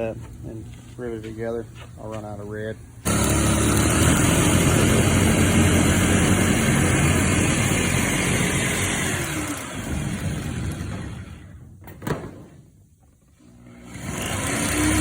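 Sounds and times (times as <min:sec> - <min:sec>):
machine running with hiss and hum: 0:00.0 - 0:11.6.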